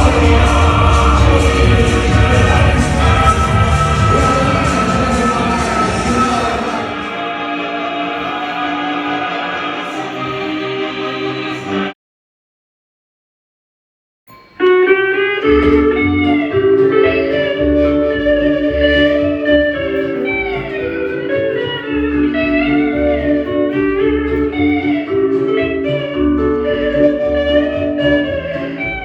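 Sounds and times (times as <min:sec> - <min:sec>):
steady bass beat: 0:00.0 - 0:07.0, 0:15.5 - 0:29.0
guitar-led background music: 0:14.6 - 0:29.0.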